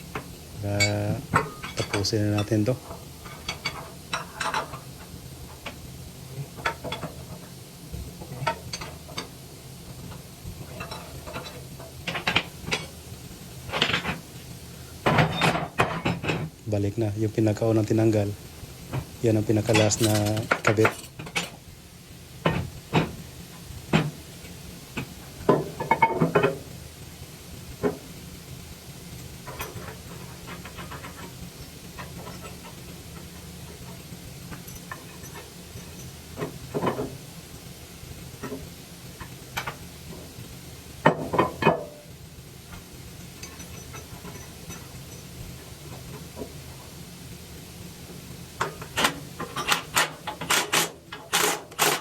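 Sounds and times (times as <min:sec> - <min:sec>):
metal tools clanking: 0:00.7 - 0:02.7, 0:19.6 - 0:21.5, 0:48.6 - 0:52.0.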